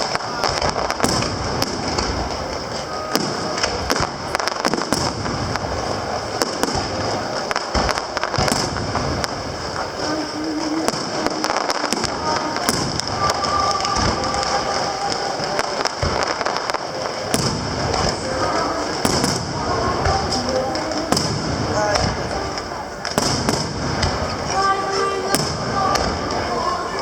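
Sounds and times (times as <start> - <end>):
fireworks bangs: 0.0 - 27.0
fireworks crackling: 0.0 - 27.0.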